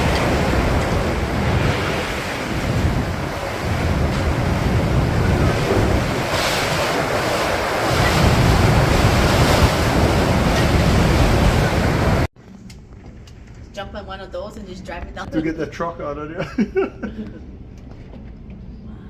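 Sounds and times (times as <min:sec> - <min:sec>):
blizzard wind buffeting microphone: 0:00.0 - 0:12.3.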